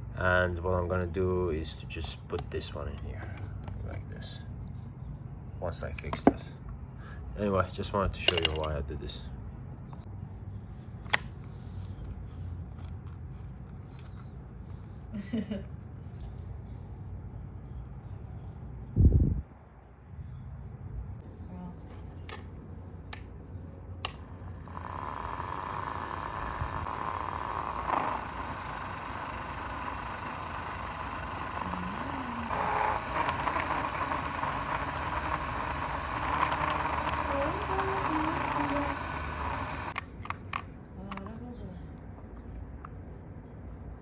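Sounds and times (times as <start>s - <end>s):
electric power tool whining: 24.1s - 40.0s.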